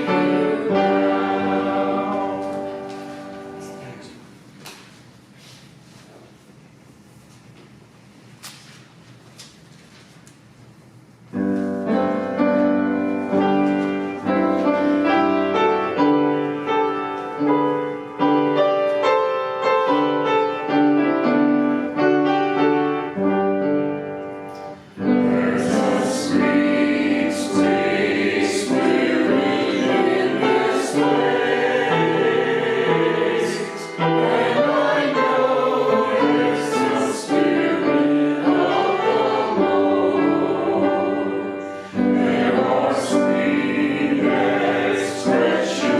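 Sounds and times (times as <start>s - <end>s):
voices singing a hymn: 0.0s - 4.2s, 24.6s - 45.9s.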